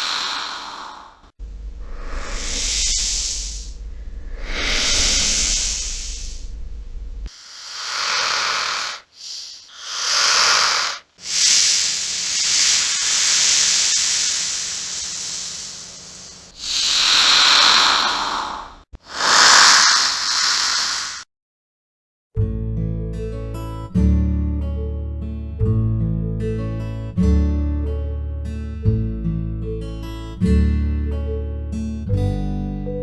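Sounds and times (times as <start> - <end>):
snake hissing: 0.0 - 21.3
acoustic guitar music: 22.4 - 33.0.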